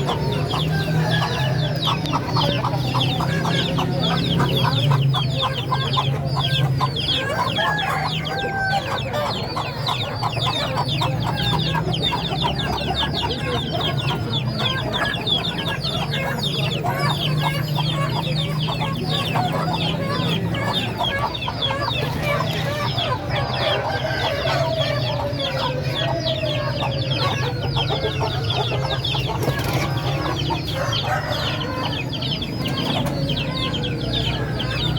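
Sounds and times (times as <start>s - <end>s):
chickens clucking: 0.0s - 34.9s.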